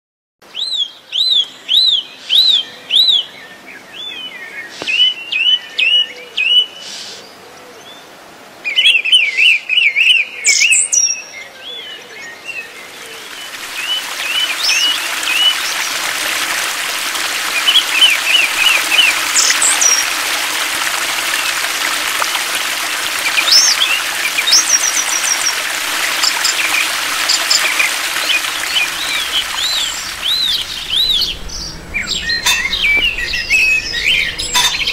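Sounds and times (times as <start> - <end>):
songbirds chirping: 0.5 - 34.9
steady rushing noise: 13.2 - 34.9.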